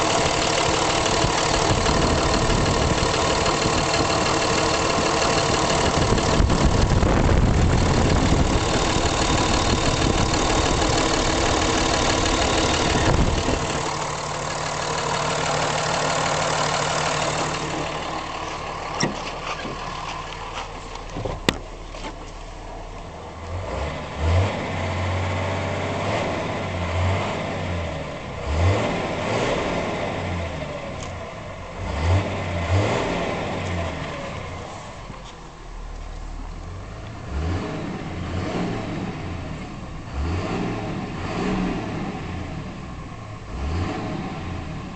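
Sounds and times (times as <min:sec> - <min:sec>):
low pulsing: 0:00.0 - 0:30.4
diesel engine running: 0:00.0 - 0:44.9.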